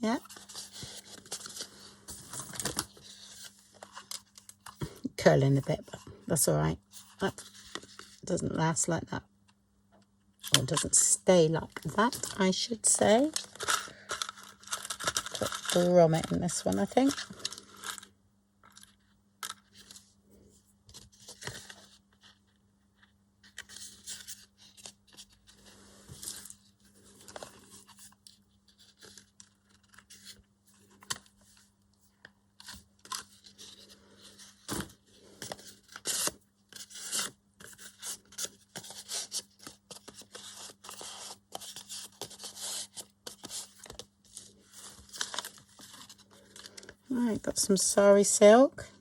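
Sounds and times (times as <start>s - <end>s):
paper rustling: 0.2s - 4.9s, 32.6s - 47.0s.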